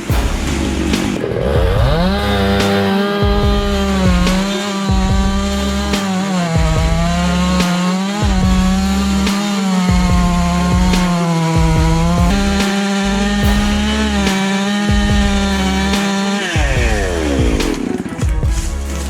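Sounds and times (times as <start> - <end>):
chainsaw cutting wood: 0.0 - 19.0.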